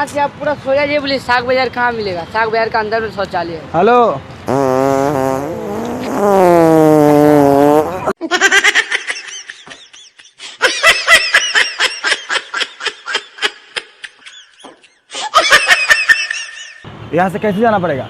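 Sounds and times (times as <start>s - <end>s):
fart sound effect: 4.5s - 8.2s
high-pitched laughter: 8.0s - 16.8s.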